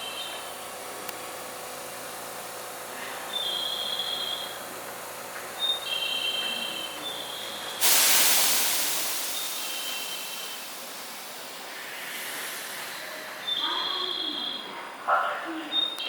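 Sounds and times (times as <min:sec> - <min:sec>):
compressed air hissing: 0:07.6 - 0:13.6.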